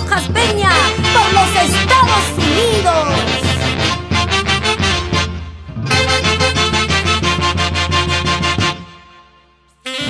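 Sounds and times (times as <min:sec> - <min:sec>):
lively dance band music: 0:00.0 - 0:10.0.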